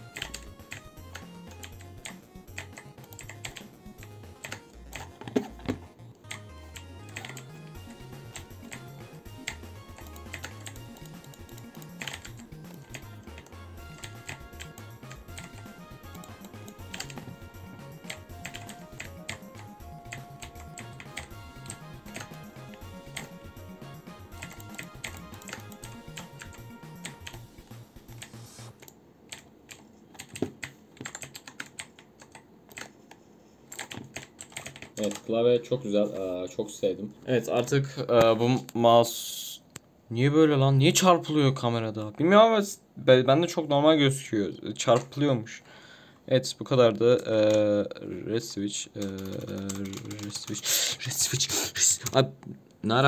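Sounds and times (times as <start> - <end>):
background music with bass line: 0.0 - 28.7
typing on mechanical keyboard: 0.1 - 3.7, 4.4 - 5.4, 7.1 - 7.5, 9.4 - 17.2, 18.0 - 22.4, 24.4 - 27.4, 28.1 - 32.9, 33.7 - 35.2, 49.0 - 50.6
mechanical keyboard keystrokes: 28.8 - 32.9, 49.0 - 50.5.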